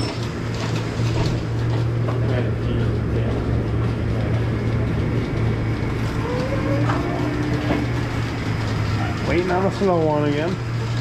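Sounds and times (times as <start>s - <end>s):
milking machinery humming: 0.0s - 11.0s.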